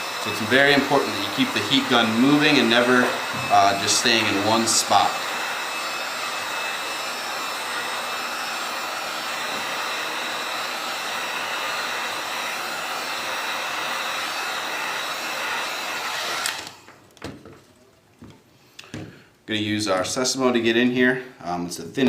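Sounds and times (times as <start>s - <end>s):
heat gun blowing air: 0.0s - 16.9s.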